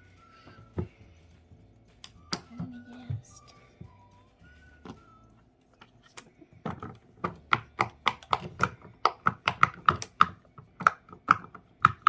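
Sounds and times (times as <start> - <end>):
plastic fidget toy popping: 5.8 - 12.0.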